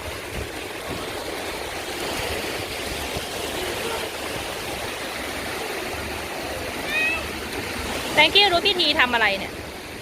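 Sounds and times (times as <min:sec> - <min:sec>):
surf hissing on sandy beach: 0:00.0 - 0:10.0.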